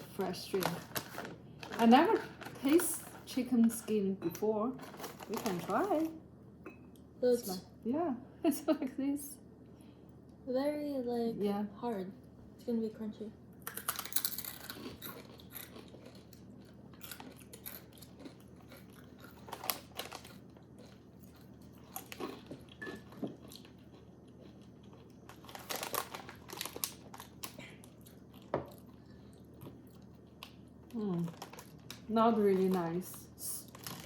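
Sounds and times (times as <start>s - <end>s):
crunchy chewing: 13.6s - 32.0s.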